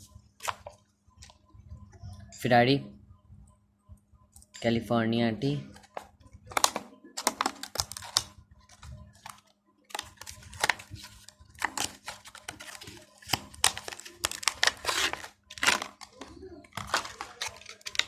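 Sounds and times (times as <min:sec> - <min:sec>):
plastic and cardboard crackling: 0:05.7 - 0:18.0.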